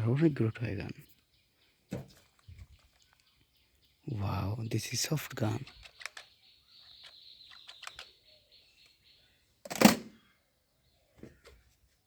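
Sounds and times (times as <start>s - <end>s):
toy gun plastic clicks: 5.6s - 8.1s.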